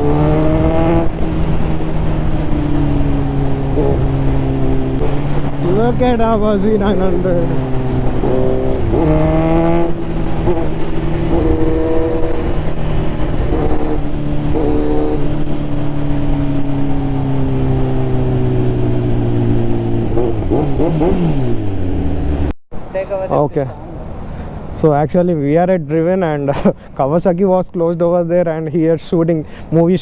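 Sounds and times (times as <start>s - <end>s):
wind rush: 0.0s - 22.4s
motorcycle engine running: 0.0s - 22.5s.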